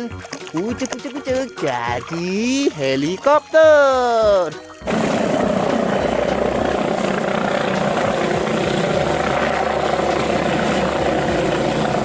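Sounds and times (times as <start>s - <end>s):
helicopter rotor and engine: 4.8s - 12.0s.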